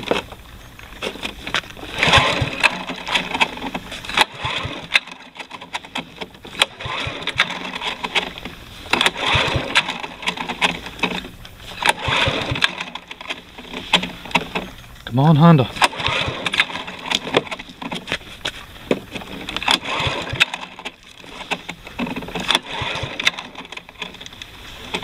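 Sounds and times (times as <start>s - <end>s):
lawn mower recoil starter pulls: 0.0s - 25.0s.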